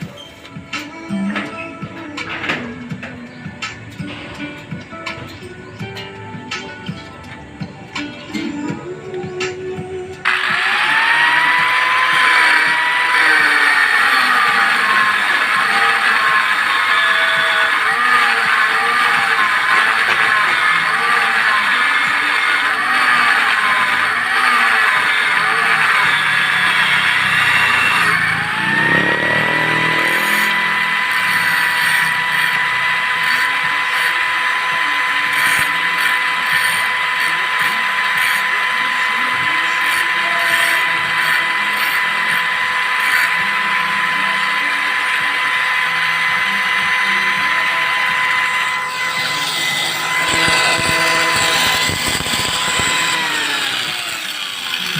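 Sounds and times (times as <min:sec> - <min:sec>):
angle grinder whine: 0:00.0 - 0:54.9.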